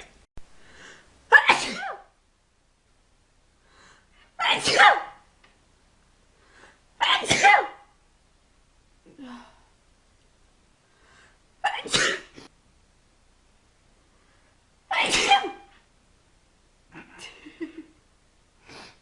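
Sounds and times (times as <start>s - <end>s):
person sneezing: 1.3s - 2.1s, 4.4s - 5.2s, 7.0s - 7.8s, 11.7s - 12.5s, 14.9s - 15.7s
faint intake of breath: 10.8s - 11.4s.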